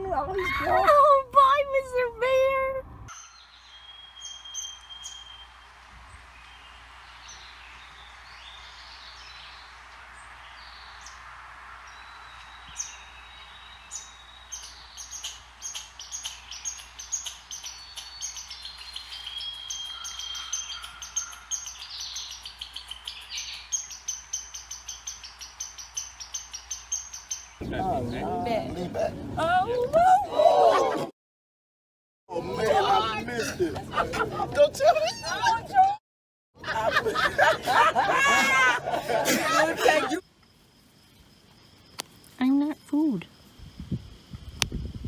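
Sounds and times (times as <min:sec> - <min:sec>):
bird whistles: 0:03.1 - 0:05.6, 0:12.2 - 0:27.5
small birds chirping: 0:03.1 - 0:28.8.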